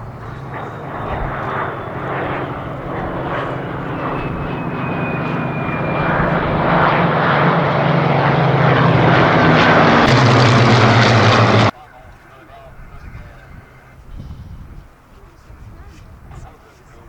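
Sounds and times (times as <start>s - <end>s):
piston aircraft engine running: 0.0s - 11.8s.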